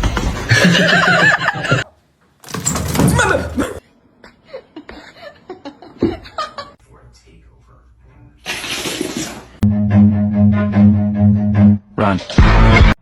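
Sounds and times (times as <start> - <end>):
people laughing: 0.5 - 1.9, 3.5 - 6.8.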